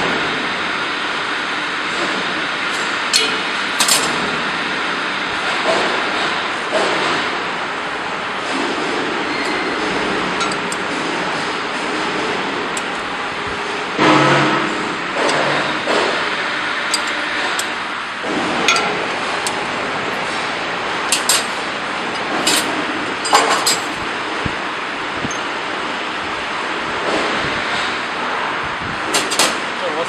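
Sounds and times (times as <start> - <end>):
metal parts rattling clatter: 3.8 - 4.2, 21.1 - 24.0
metal tools clinking: 10.4 - 10.8, 16.9 - 17.7, 18.7 - 19.6, 22.1 - 24.0.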